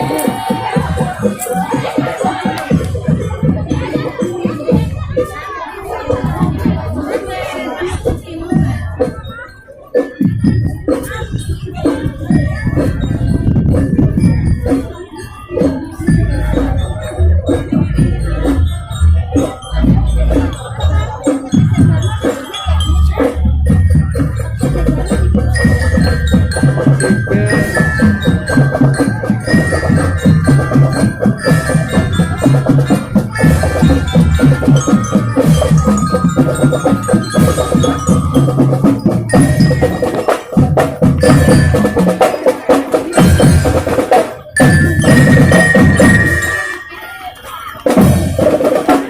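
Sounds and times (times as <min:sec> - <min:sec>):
marching drum beat: 0:00.0 - 0:05.3, 0:15.6 - 0:46.6, 0:47.8 - 0:49.0
glockenspiel melody: 0:08.3 - 0:49.0.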